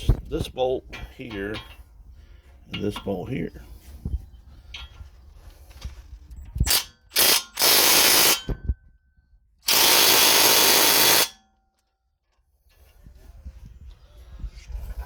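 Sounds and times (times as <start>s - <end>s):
impact wrench bursts: 6.7s - 8.6s, 9.6s - 11.4s.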